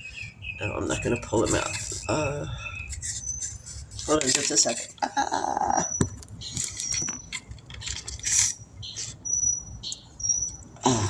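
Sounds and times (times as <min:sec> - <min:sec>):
songbird singing: 0:00.0 - 0:11.0
handling rustling and knock: 0:02.9 - 0:05.0, 0:06.0 - 0:09.2.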